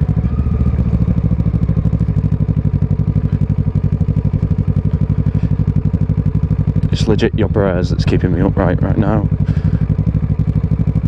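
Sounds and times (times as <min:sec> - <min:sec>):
motorcycle engine running at low revs: 0:00.0 - 0:11.0.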